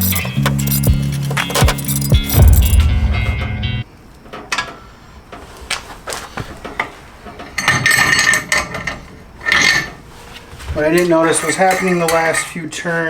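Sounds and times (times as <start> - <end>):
metal tools clinking: 0.0 - 2.9, 7.4 - 10.0, 10.7 - 13.0
sharp metallic knocks and rattle: 0.0 - 3.8, 10.9 - 12.7.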